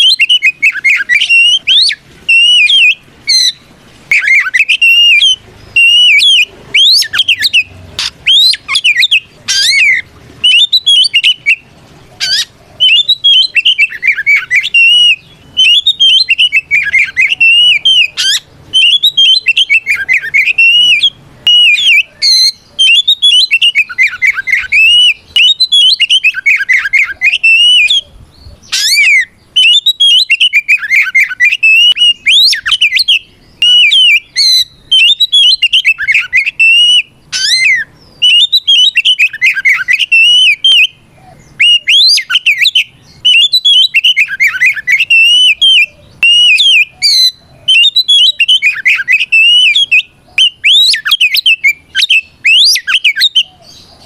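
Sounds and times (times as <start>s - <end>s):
bird singing whistled phrases: 0.0s - 54.0s.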